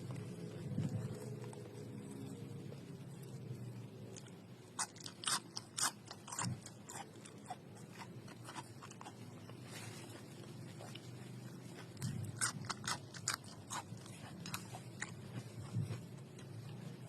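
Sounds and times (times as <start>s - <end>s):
quiet chewing: 0.0s - 17.0s
crisp crunching bites: 4.2s - 9.4s.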